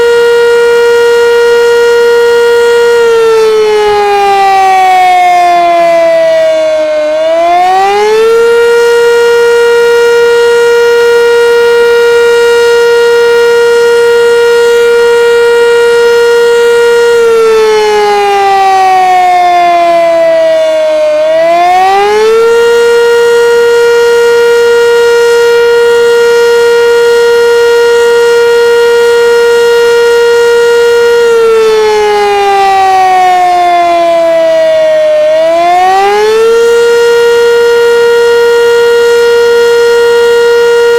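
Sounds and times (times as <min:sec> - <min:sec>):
warning siren wailing: 0:00.0 - 0:40.9.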